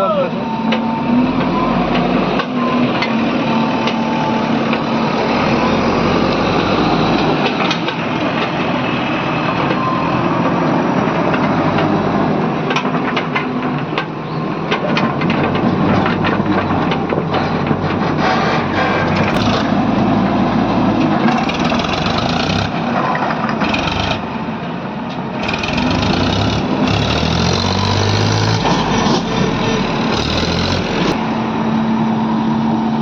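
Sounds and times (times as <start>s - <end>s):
diesel engine running: 15.7s - 33.0s.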